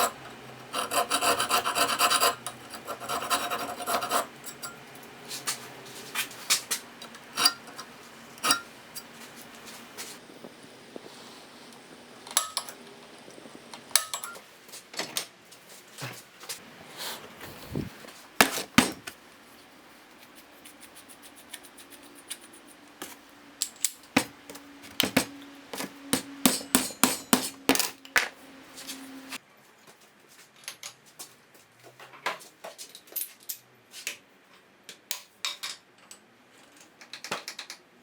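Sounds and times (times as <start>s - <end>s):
faint steady hum: 0.0s - 29.7s
hammering on steel: 26.0s - 27.8s.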